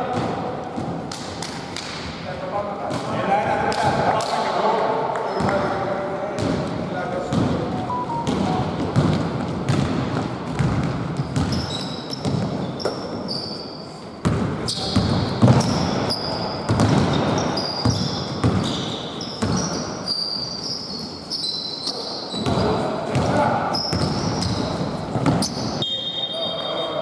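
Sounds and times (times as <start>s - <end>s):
shoes squeaking on floor: 7.8s - 9.8s, 11.2s - 22.8s, 23.7s - 27.0s
basketball bouncing: 8.2s - 12.9s, 16.7s - 18.7s, 19.4s - 19.8s.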